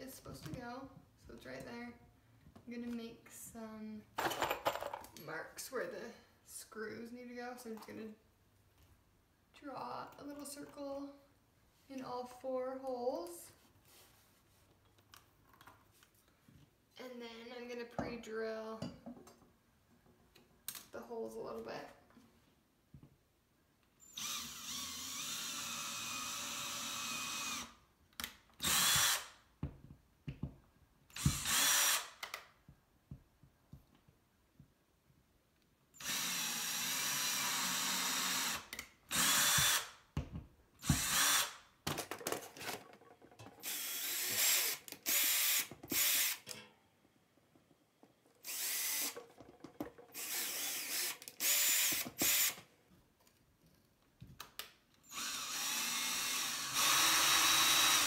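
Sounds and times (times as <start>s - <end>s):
power drill drilling: 24.1s - 27.7s, 28.6s - 29.4s, 31.2s - 32.2s, 36.0s - 40.0s, 40.8s - 41.6s, 43.6s - 46.6s, 48.4s - 49.2s, 50.1s - 52.6s, 55.1s - 58.0s.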